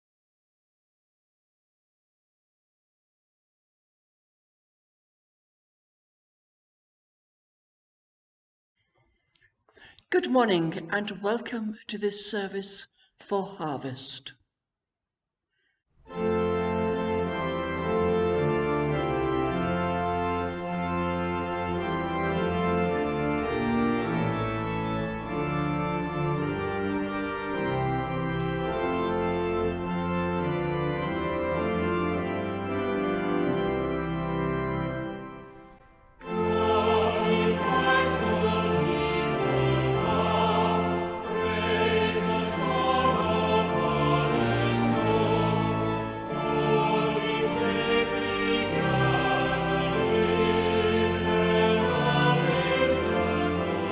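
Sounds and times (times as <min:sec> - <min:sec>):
choir singing: 0:16.1 - 0:53.9
organ playing sustained chords: 0:16.1 - 0:53.9.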